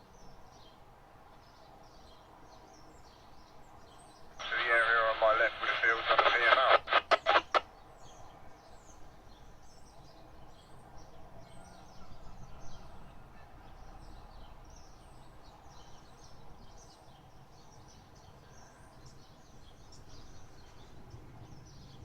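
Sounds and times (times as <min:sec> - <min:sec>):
small birds chirping: 0:01.4 - 0:11.1
steady low background noise: 0:03.6 - 0:07.6.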